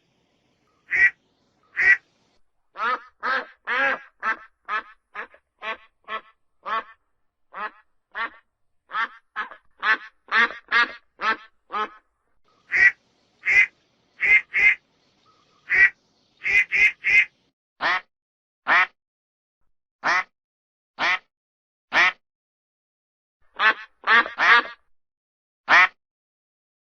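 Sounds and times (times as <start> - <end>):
duck quacking: 0.8 - 2.0, 2.8 - 12.1, 12.7 - 14.8, 15.6 - 18.1, 18.7 - 19.0, 20.0 - 20.3, 21.0 - 21.3, 21.9 - 22.2, 23.6 - 24.8, 25.7 - 26.0.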